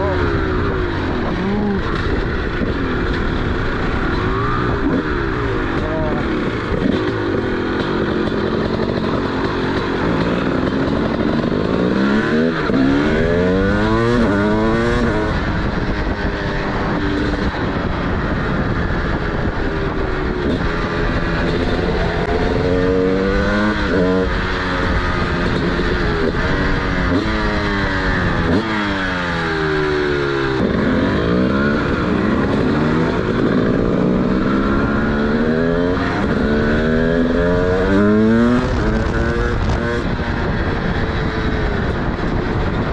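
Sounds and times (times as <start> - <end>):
two-stroke motorcycle engine revving: 0.0 - 42.9.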